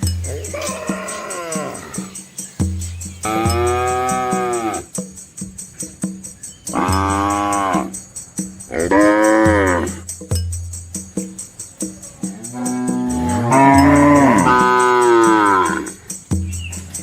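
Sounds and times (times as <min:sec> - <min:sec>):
cows mooing: 0:00.3 - 0:02.2, 0:03.2 - 0:04.9, 0:06.7 - 0:08.0, 0:08.7 - 0:10.0, 0:12.2 - 0:16.0.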